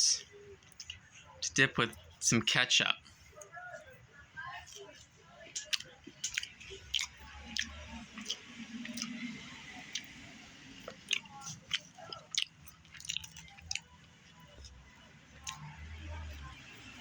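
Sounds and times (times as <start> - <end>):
chewing fries: 0.0 - 2.4, 3.0 - 17.0
wet mouth clicks: 0.7 - 1.0, 5.6 - 10.2, 10.9 - 14.7, 15.4 - 15.9.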